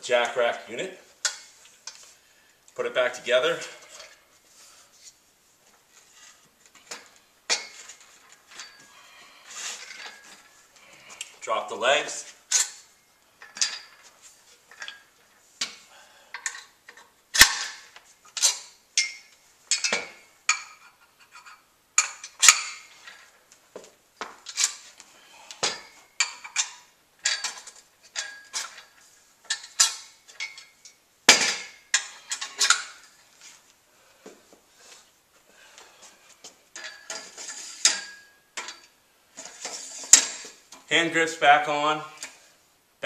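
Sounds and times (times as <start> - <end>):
metal clanks and rattles: 6.7 - 9.0, 12.5 - 23.4, 25.6 - 33.3, 36.7 - 40.6.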